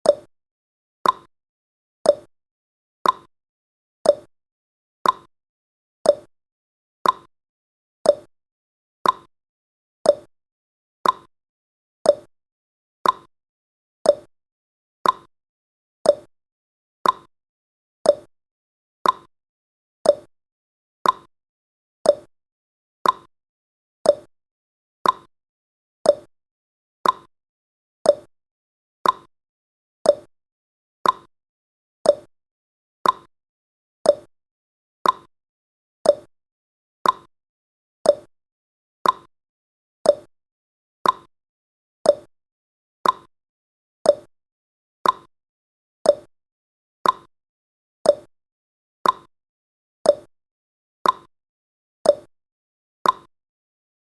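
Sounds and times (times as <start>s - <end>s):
clock ticking: 27.0s - 27.3s, 31.0s - 31.3s, 33.0s - 33.3s, 35.0s - 35.3s, 37.0s - 37.3s, 39.0s - 39.3s, 41.0s - 41.3s, 43.0s - 43.3s, 45.0s - 45.3s, 47.0s - 47.3s, 49.0s - 49.3s, 53.0s - 53.3s.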